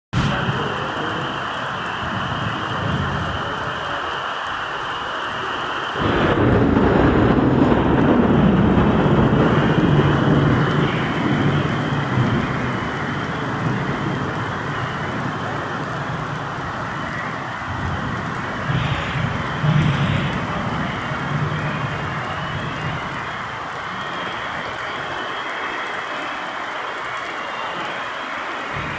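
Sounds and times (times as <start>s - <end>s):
heavy rain falling: 0.1s - 28.9s.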